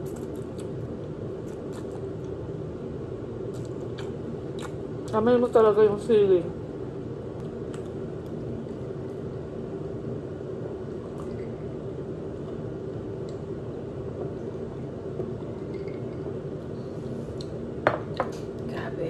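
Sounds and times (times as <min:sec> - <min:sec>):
low background hum: 0:00.0 - 0:19.0
wet mouth sounds eating: 0:01.4 - 0:02.4, 0:03.5 - 0:04.8.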